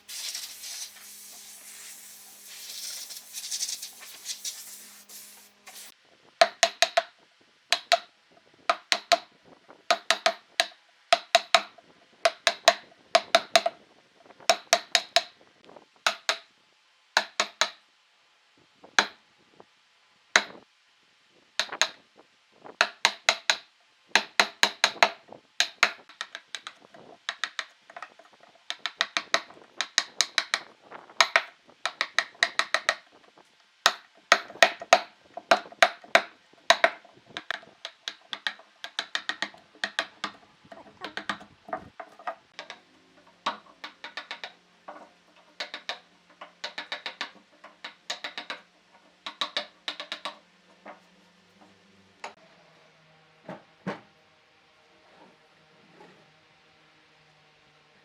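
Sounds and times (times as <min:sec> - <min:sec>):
soft hiss: 0:00.0 - 0:06.4.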